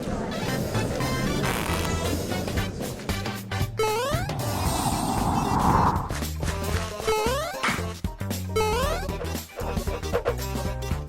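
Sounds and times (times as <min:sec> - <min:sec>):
background music: 0:00.0 - 0:11.0
whoosh sound effect: 0:04.2 - 0:06.3.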